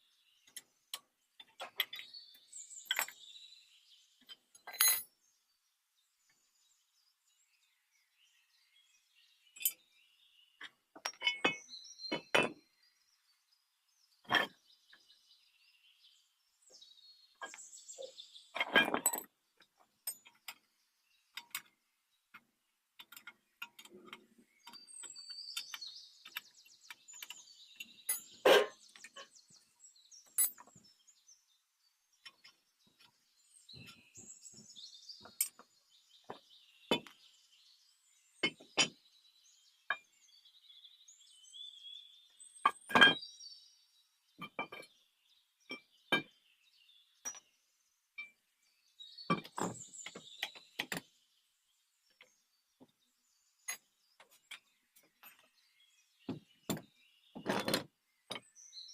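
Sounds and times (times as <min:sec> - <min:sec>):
birds chirping: 0:00.0 - 0:58.9
metal tools clinking: 0:02.9 - 0:03.2, 0:04.5 - 0:05.1, 0:11.0 - 0:12.5, 0:18.6 - 0:19.3, 0:27.1 - 0:29.3, 0:30.3 - 0:30.8.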